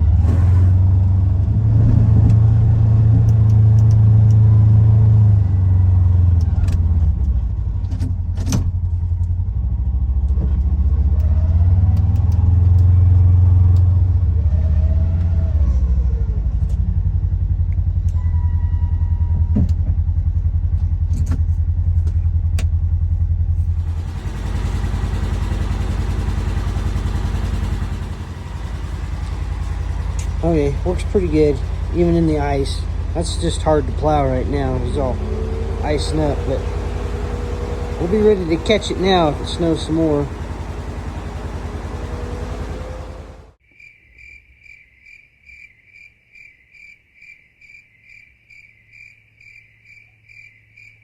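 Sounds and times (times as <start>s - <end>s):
vehicle engine running: 0.0s - 43.6s
knocks and clunks: 19.3s - 20.1s, 20.7s - 22.8s.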